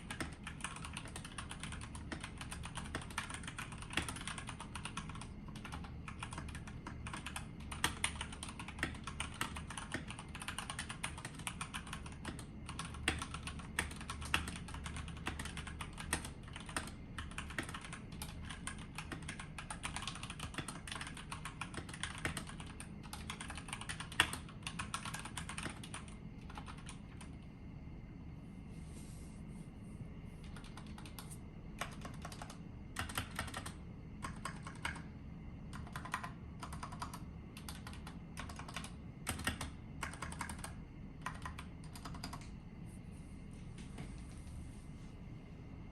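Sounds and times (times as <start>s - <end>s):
fast typing on mechanical keyboard: 0.0s - 27.4s, 30.4s - 35.1s, 35.7s - 42.5s.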